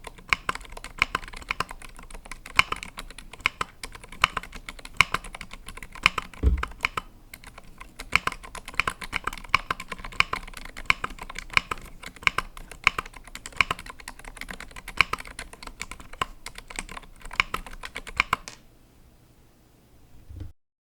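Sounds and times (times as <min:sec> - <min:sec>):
mechanical keyboard typing: 0:00.0 - 0:18.6
deeper keyboard thump: 0:06.4 - 0:06.9.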